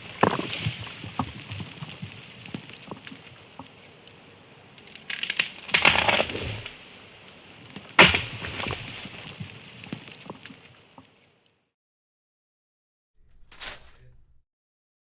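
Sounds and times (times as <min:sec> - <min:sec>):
wood cracking and splintering: 0:00.0 - 0:03.8, 0:04.8 - 0:06.9, 0:07.7 - 0:10.8
branches crackling: 0:00.0 - 0:11.5, 0:13.2 - 0:14.4
tree crashing down: 0:05.1 - 0:06.8, 0:07.9 - 0:10.4.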